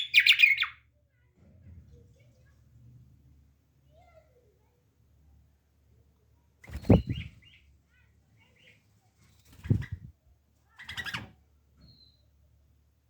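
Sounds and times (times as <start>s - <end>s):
bird chirping softly: 0.0s - 0.9s, 6.6s - 12.6s
wing flapping: 6.6s - 7.4s, 9.4s - 10.1s.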